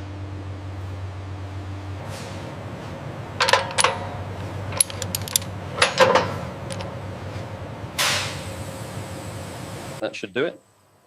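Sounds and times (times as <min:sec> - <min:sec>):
low hum: 0:00.0 - 0:10.0
metal tools clinking: 0:03.4 - 0:07.0.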